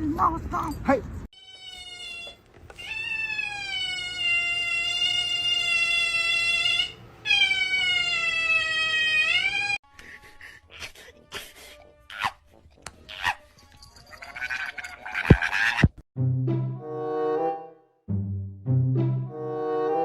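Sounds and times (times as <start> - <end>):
cat yowling: 1.4 - 9.8.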